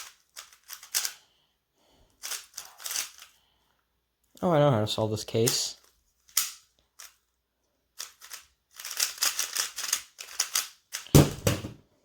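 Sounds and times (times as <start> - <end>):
puzzle cube plastic clicking: 0.0 - 1.2, 2.2 - 3.3, 8.0 - 11.2
loud thump: 11.2 - 11.8.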